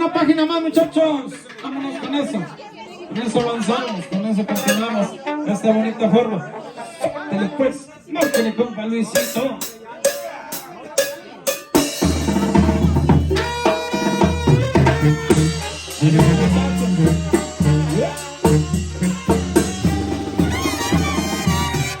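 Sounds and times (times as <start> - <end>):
drums: 9.2 - 22.0
brass band playing: 11.7 - 22.0
heavy low bass line: 14.8 - 21.2.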